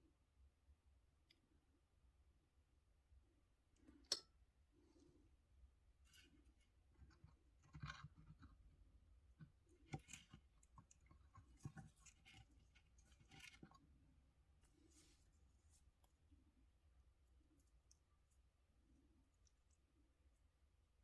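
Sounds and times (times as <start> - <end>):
low steady hum: 0.0 - 21.0
faint clicks and scratches: 6.0 - 21.0.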